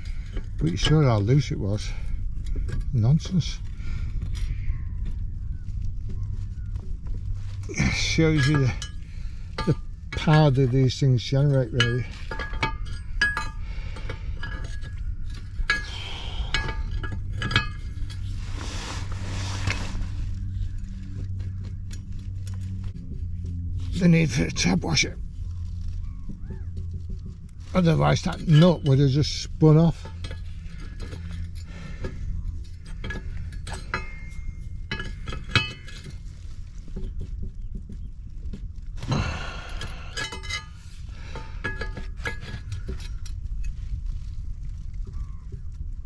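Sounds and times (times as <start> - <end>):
metal tools clinking: 0.0 - 4.5, 7.6 - 20.0, 26.5 - 37.1, 39.0 - 44.4
steady low hum: 0.0 - 46.0.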